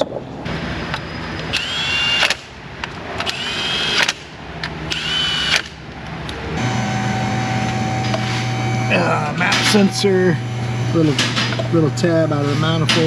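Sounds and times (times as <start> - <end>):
cordless ratchet motor whining: 1.5 - 2.4, 3.2 - 4.2, 4.9 - 5.7
steady low hum: 4.3 - 13.0.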